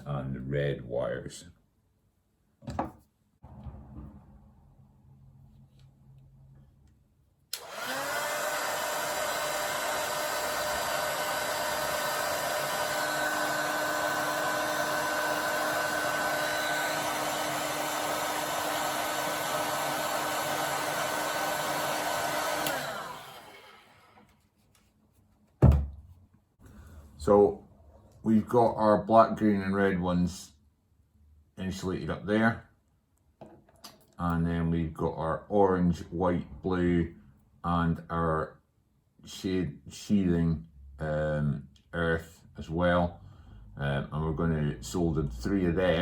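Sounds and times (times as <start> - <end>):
heat gun blowing: 7.5 - 24.3.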